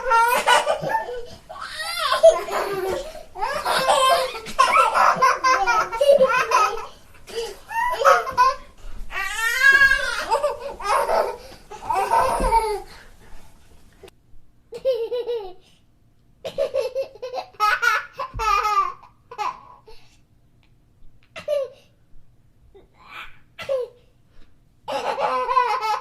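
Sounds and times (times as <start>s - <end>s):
baby laughing: 0.0s - 12.9s, 24.9s - 26.0s.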